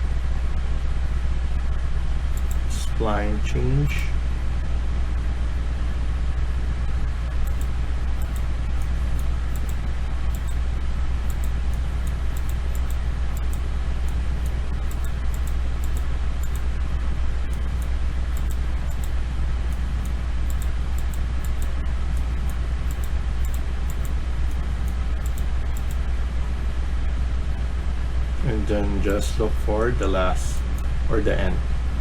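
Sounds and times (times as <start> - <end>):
low background rumble: 0.0 - 32.0
computer mouse clicking: 2.3 - 3.0, 7.4 - 10.6, 11.2 - 26.8, 30.5 - 30.9.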